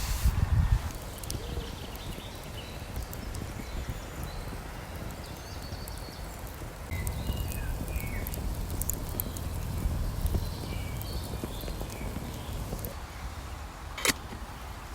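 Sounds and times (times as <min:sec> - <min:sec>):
rain falling in a forest: 0:00.8 - 0:14.9
bird chirps: 0:01.3 - 0:12.8
drops ticking: 0:02.8 - 0:13.0
low rumble: 0:06.9 - 0:12.9.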